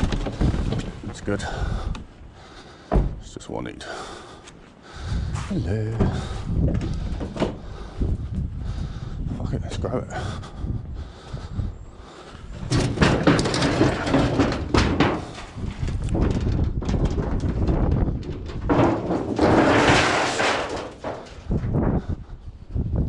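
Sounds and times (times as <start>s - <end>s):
scrap metal clanking: 12.6s - 21.8s.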